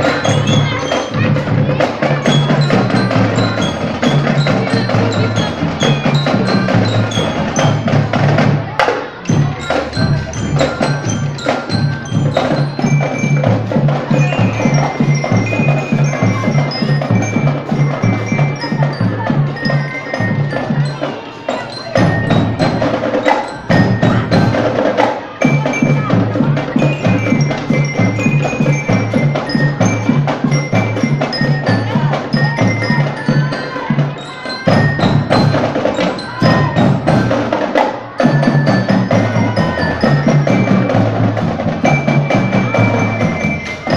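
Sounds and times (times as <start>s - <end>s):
bell lyre melody: 0.0s - 8.6s, 9.3s - 24.8s, 25.4s - 37.6s, 38.2s - 43.9s
marching band drums: 0.0s - 43.9s.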